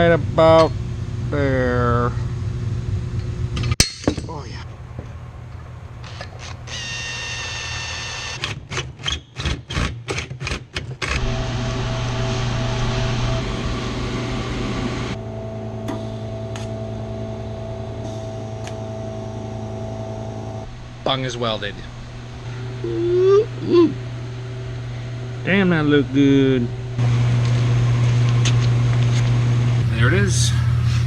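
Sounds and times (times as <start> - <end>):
welder low hum: 11.2 - 18.2, 29.8 - 31.0.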